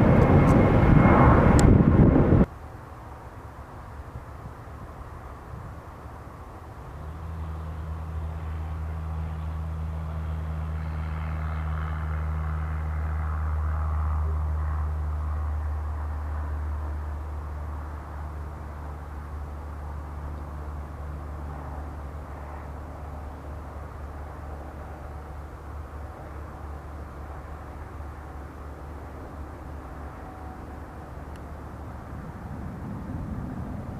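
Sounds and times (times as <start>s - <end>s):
aircraft engine drone: 0.0s - 33.9s.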